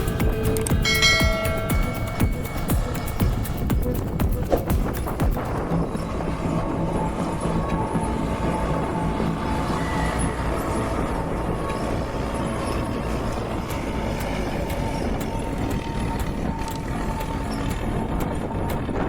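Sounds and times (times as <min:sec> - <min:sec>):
stump grinder engine rumbling: 0:00.0 - 0:19.0.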